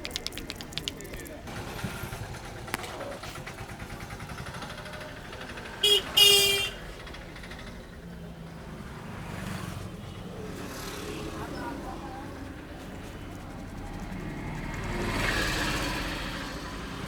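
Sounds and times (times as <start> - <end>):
street traffic noise: 0.0 - 17.0
vehicle horn honking: 5.8 - 6.9.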